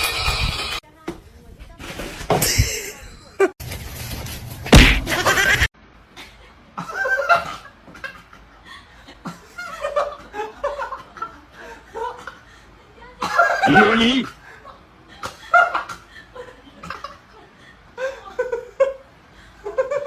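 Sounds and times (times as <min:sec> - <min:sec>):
loud thump: 0:04.7 - 0:05.3
people laughing: 0:04.9 - 0:20.0.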